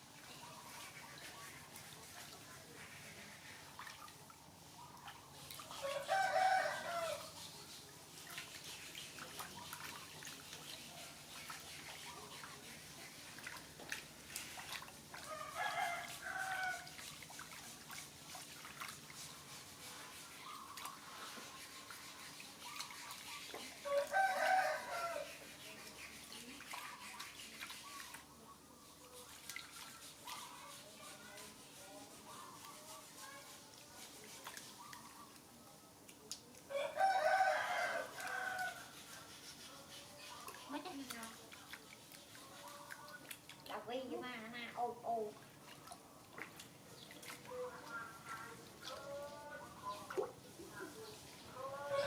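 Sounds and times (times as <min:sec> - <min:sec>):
bath water dripping and splashing: 0:00.1 - 0:28.4, 0:29.0 - 0:31.4, 0:32.2 - 0:39.6, 0:40.4 - 0:51.6
rooster crowing: 0:05.8 - 0:07.3, 0:15.3 - 0:16.9, 0:23.8 - 0:25.3, 0:36.7 - 0:38.8.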